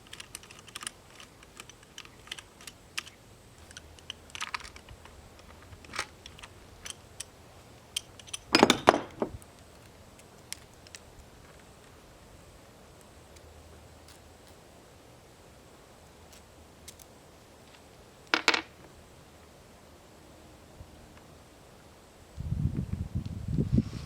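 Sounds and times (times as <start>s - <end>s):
hand tools clicking on metal: 0.0s - 11.7s.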